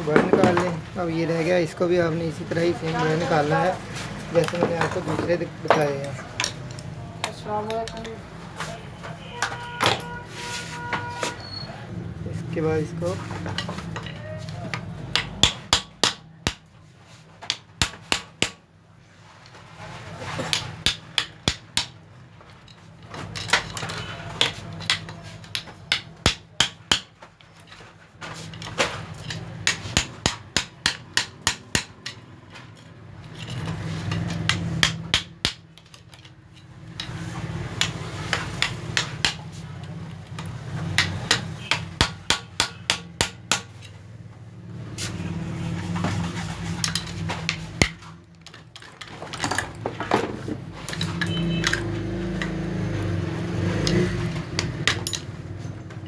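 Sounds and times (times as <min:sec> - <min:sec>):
hammer striking bearing: 0:14.8 - 0:16.7, 0:17.4 - 0:18.6, 0:20.5 - 0:22.0, 0:23.5 - 0:27.3, 0:28.6 - 0:32.4, 0:33.3 - 0:36.1, 0:36.7 - 0:43.9, 0:53.6 - 0:55.4.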